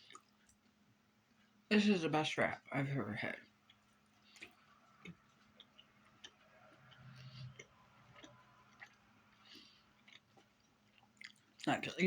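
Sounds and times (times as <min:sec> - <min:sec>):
faint chewing: 0:00.0 - 0:01.7, 0:03.3 - 0:12.0
mouth clicks and smacks: 0:03.6 - 0:11.7.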